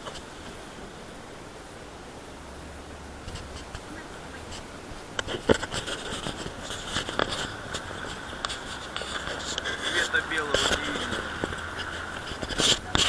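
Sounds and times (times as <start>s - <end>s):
wind rumbling on microphone: 0.0s - 13.0s
crackling and scraping clicks: 3.2s - 13.0s.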